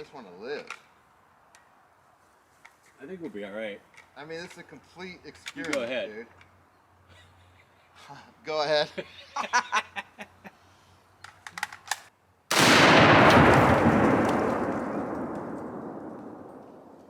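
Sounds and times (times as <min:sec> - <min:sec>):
loud explosion with rumble: 0:12.5 - 0:17.0
rifle shot: 0:12.5 - 0:17.0.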